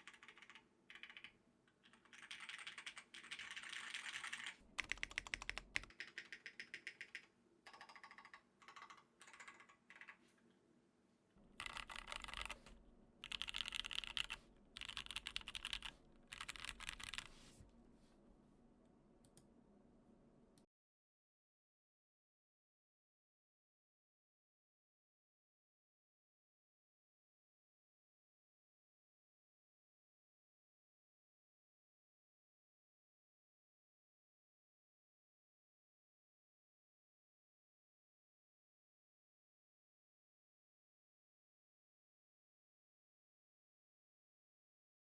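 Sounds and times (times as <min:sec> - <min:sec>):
mechanical keyboard typing: 0:00.0 - 0:10.2, 0:11.6 - 0:17.4.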